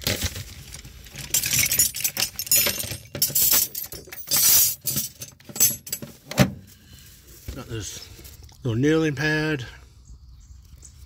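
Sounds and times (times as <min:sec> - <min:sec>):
metal tools clinking and rattling: 0:01.1 - 0:06.5.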